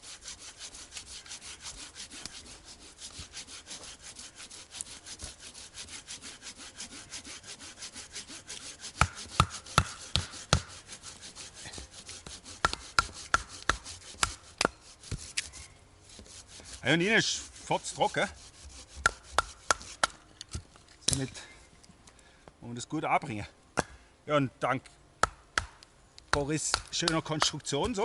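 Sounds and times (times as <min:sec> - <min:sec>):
hand saw cutting wood: 0:00.0 - 0:20.2, 0:26.3 - 0:28.0
wood being chopped: 0:09.0 - 0:10.8, 0:12.6 - 0:15.3, 0:19.0 - 0:21.2, 0:25.2 - 0:28.0.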